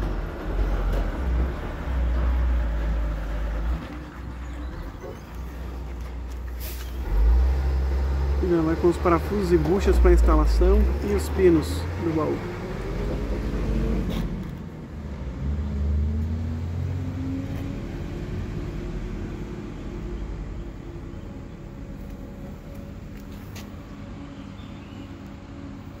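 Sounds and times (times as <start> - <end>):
vehicle engine rumbling: 0.0 - 26.0.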